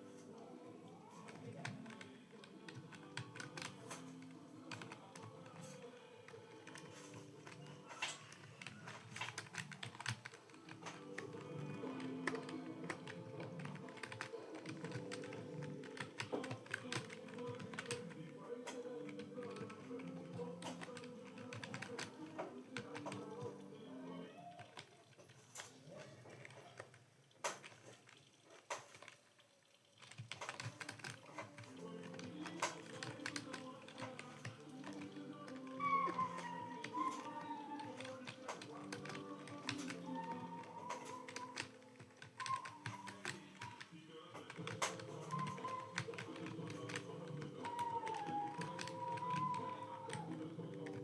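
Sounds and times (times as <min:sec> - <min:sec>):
faint background music: 0:00.0 - 0:51.0
computer keyboard key clicks: 0:06.6 - 0:23.5, 0:30.0 - 0:51.0.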